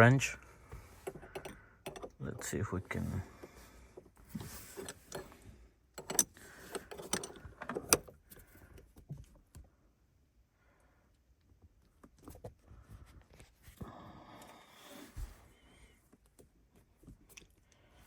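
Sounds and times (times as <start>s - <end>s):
wrench clicking and clinking: 1.0s - 2.5s, 4.7s - 5.4s, 6.0s - 8.1s.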